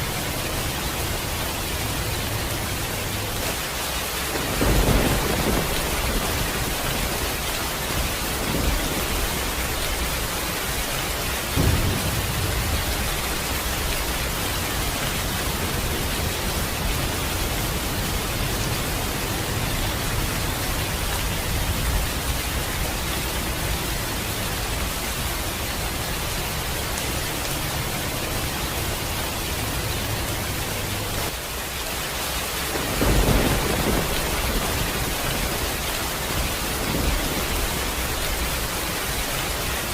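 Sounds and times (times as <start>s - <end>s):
heavy rain: 0.0s - 39.9s
thunder rumbling: 3.2s - 26.6s, 32.6s - 39.9s.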